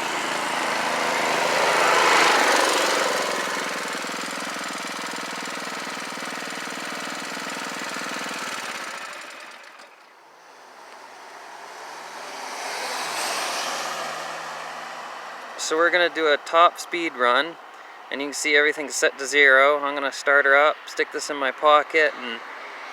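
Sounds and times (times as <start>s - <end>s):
atv engine running hard: 0.0s - 15.7s.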